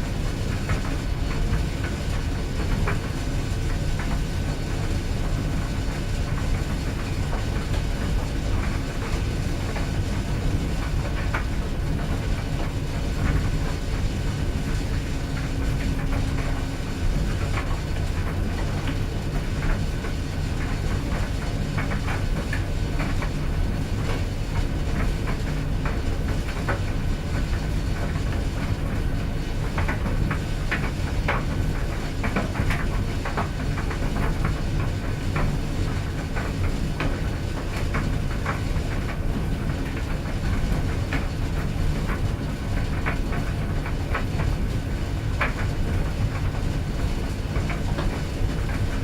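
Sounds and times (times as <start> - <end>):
clothes dryer drum rumble: 0.0 - 49.0.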